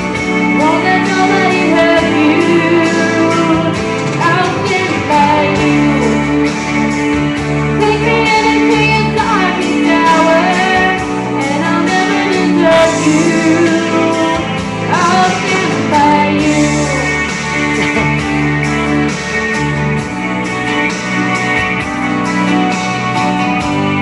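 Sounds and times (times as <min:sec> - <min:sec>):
guitar-led backing music: 0:00.0 - 0:24.0
woman singing: 0:00.4 - 0:17.3.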